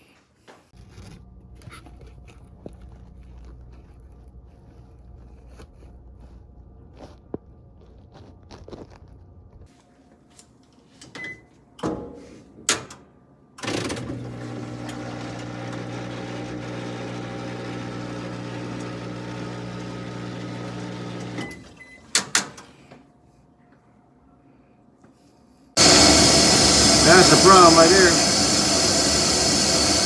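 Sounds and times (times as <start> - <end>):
washing machine drain pump humming: 14.1 - 21.5, 25.8 - 30.0.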